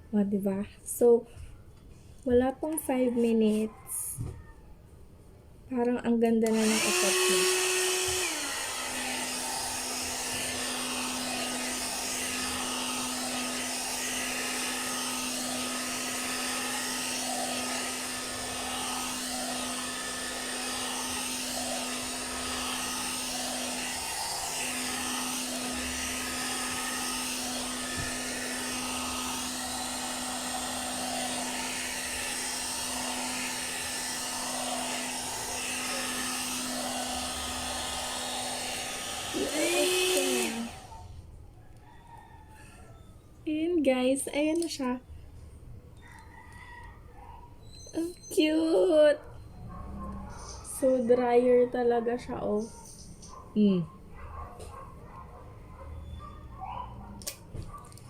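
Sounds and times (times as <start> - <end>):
hot-air brush motor hum: 6.4 - 41.2.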